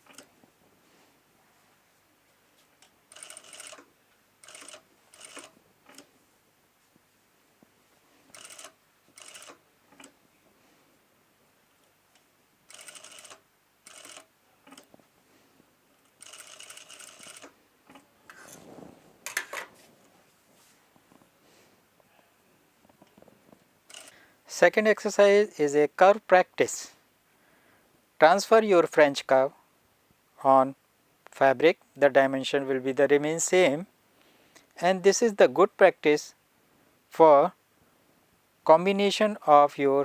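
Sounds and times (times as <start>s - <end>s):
sewing machine stitching: 3.1s - 6.1s, 8.3s - 10.1s, 12.7s - 14.9s, 16.2s - 18.6s.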